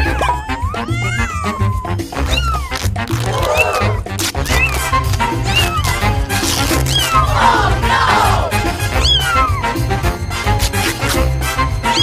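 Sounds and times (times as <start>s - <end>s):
cat meowing: 0.0s - 4.0s, 5.4s - 6.2s, 6.8s - 9.6s
background music: 0.0s - 12.0s.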